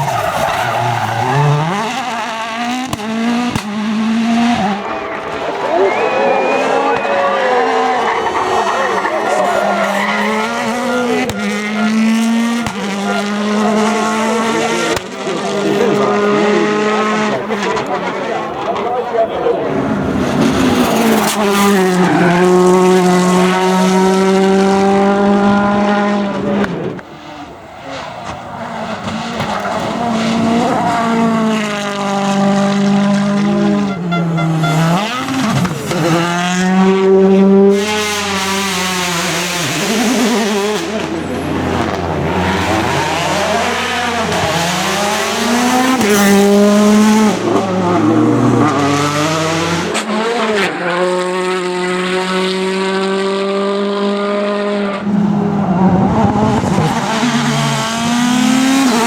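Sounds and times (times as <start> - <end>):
tyre squeal: 0.0 - 2.2, 4.5 - 15.0
rally car engines revving: 0.0 - 59.0.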